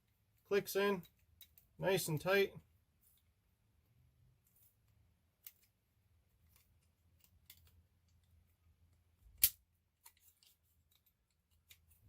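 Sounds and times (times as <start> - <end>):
blade lock snapping: 9.4 - 9.6.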